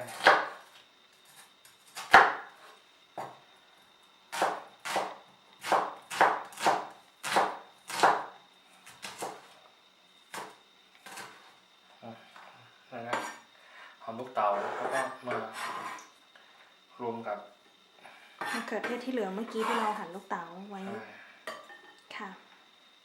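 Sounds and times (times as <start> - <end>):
knife chopping on cutting board: 0.0 - 0.6, 1.9 - 2.5, 4.3 - 8.3, 8.9 - 9.5, 10.3 - 11.4.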